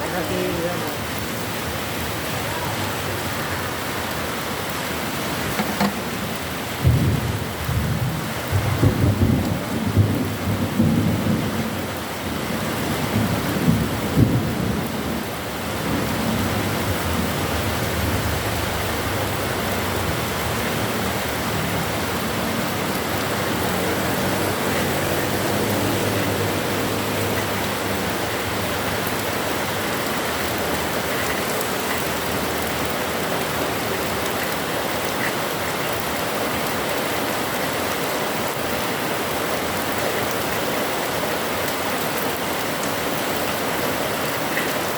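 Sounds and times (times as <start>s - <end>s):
heavy rain pouring: 0.0s - 44.9s
thunder rumbling: 6.0s - 32.9s.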